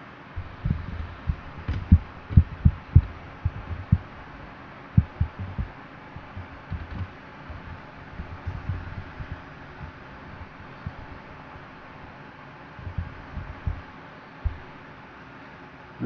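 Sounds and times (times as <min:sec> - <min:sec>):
handling thumps on microphone: 0:00.4 - 0:04.1, 0:05.0 - 0:10.0.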